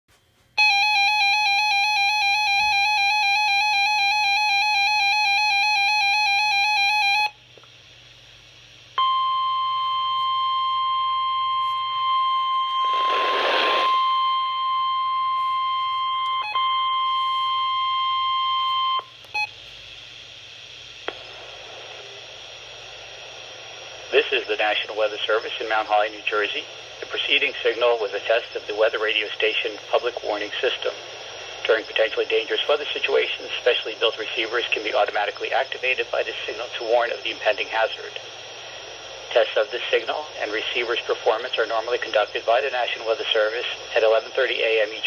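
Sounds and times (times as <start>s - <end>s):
steady warning alarm tone: 0.6s - 7.4s, 9.0s - 19.6s
radio receiver hiss: 12.6s - 14.1s, 19.0s - 45.0s
burst of static: 12.7s - 14.0s, 20.7s - 45.0s.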